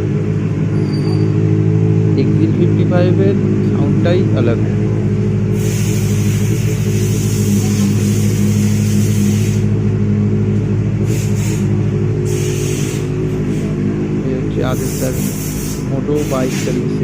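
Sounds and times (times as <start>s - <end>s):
motorcycle engine idling: 0.0s - 17.0s
steady hiss: 5.6s - 9.7s.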